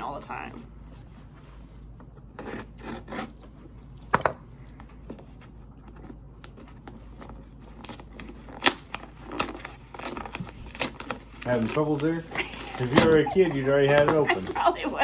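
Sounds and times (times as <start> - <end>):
package rustling and crinkling: 5.4 - 14.8.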